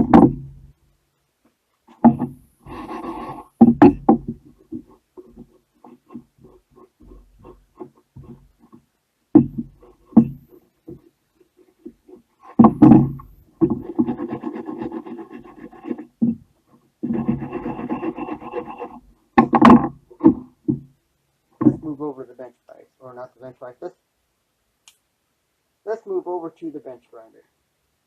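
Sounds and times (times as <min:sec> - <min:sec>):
knocks: 0:00.0 - 0:00.7, 0:01.9 - 0:11.1, 0:11.8 - 0:20.9, 0:21.6 - 0:21.9
wire brush scrubbing metal: 0:01.9 - 0:08.5.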